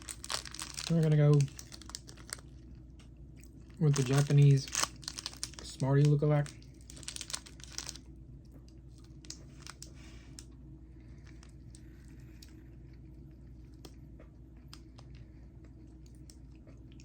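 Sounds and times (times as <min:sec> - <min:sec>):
candy wrapper clicks and rustles: 0:00.0 - 0:02.6, 0:03.4 - 0:08.1, 0:08.9 - 0:10.6
low room hum: 0:00.0 - 0:17.0.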